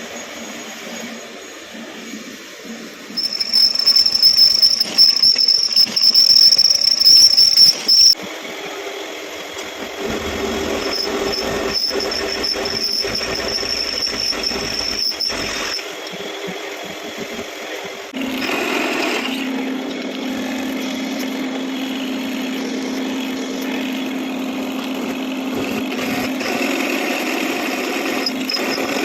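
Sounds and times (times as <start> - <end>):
machine high-pitched whine: 3.2 - 8.2, 8.8 - 17.4, 27.8 - 29.0.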